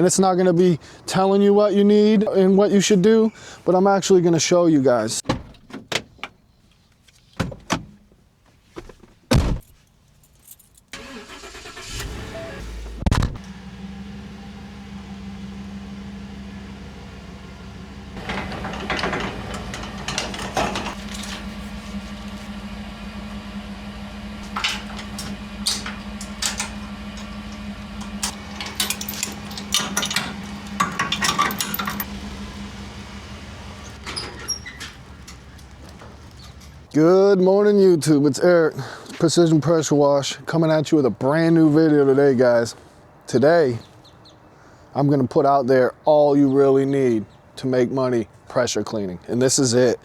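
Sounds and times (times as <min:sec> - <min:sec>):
vehicle engine idling: 0:11.0 - 0:36.9
metallic clanks and rattles: 0:18.2 - 0:22.7, 0:23.9 - 0:36.9.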